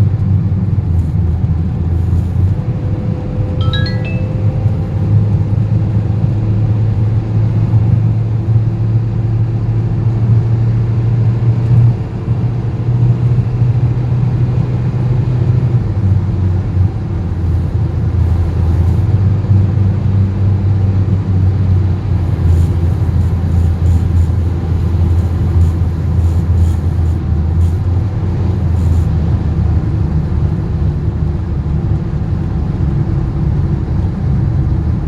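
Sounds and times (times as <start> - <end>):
short rising high tones: 3.6 - 4.9
car droning rumble: 13.3 - 35.0.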